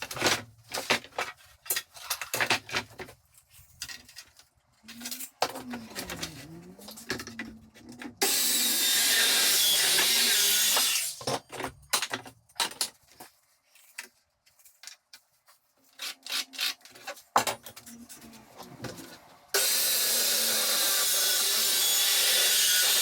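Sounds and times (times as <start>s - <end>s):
power saw cutting wood: 8.2s - 11.2s, 18.2s - 23.0s.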